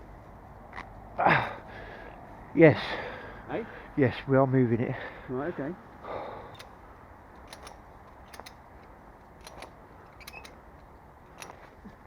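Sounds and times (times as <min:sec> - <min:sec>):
ratchet strap clicking: 0:06.5 - 0:12.0.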